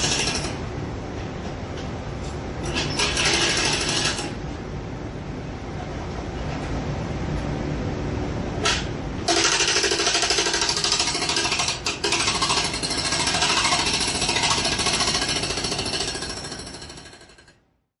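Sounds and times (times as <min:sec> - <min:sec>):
jackhammer rattling: 0:09.3 - 0:17.5.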